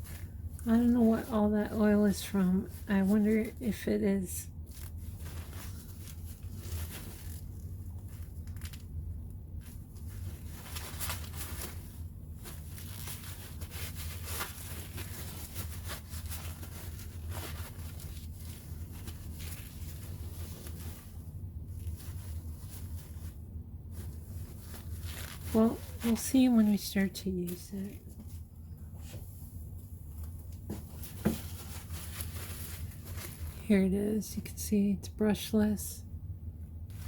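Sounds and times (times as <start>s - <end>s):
rustling and rubbing by hand: 0.0s - 34.7s, 36.5s - 37.0s.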